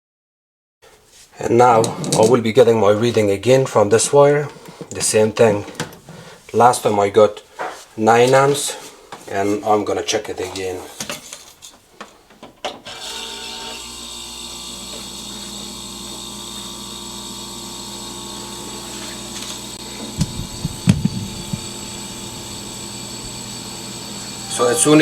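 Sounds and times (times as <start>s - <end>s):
refrigerator compressor humming: 13.2s - 25.0s.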